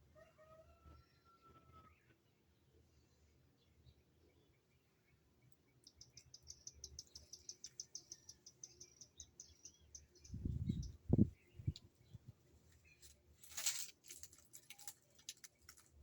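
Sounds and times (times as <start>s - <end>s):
bird singing a fast trill: 5.8s - 12.1s.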